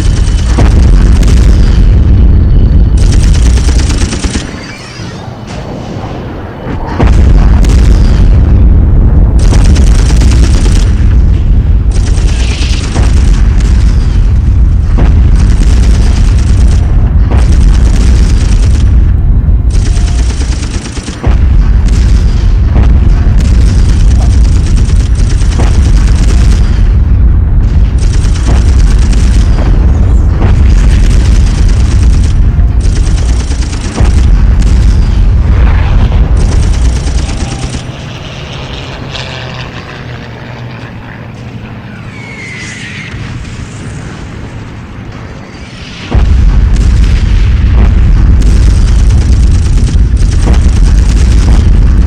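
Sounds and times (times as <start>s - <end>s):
bomb blasts rumbling: 0.0s - 42.0s, 43.1s - 52.0s
gunfire cracks: 11.9s - 27.0s, 27.7s - 38.0s, 45.8s - 52.0s.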